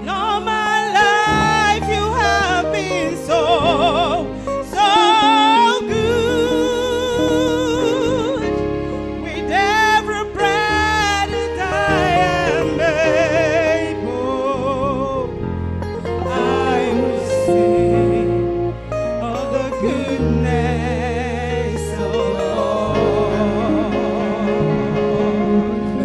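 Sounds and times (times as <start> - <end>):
person singing with vibrato: 0.0 - 26.0
sustained instrumental accompaniment: 0.0 - 26.0.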